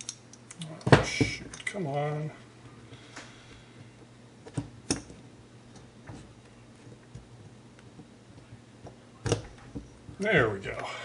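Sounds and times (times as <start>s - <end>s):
small metal parts clicking: 0.0s - 0.7s.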